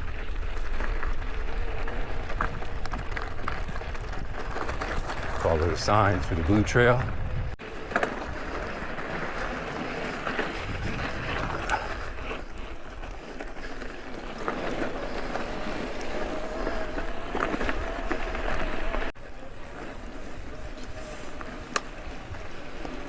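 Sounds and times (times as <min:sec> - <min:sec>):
bike tyres rolling on dirt: 0:00.0 - 0:23.0
bike knocks and rattles: 0:07.7 - 0:15.6.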